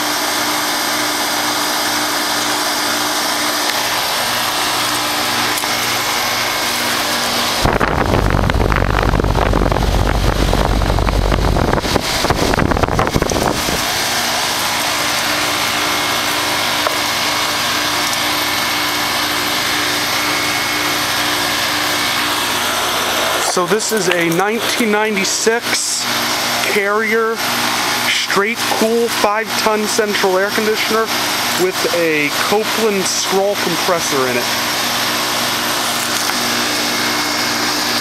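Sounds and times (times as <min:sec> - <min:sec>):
air conditioner fan and hum: 0:00.0 - 0:38.0
loud low rumble: 0:07.6 - 0:14.0.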